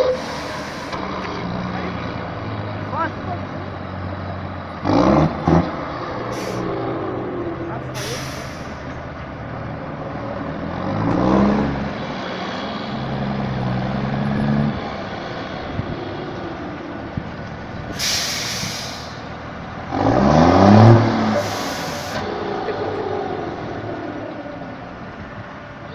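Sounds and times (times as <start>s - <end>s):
truck diesel engine revving: 0.0s - 25.9s
short burst of air hiss: 18.0s - 19.2s, 21.4s - 22.2s.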